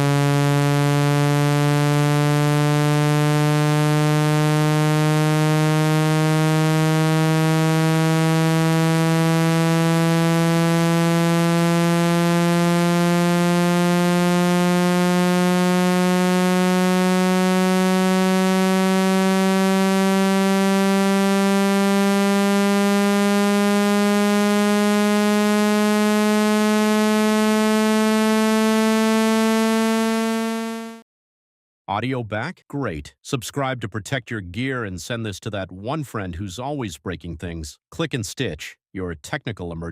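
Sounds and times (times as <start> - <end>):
buzzy rising tone: 0.0 - 31.0.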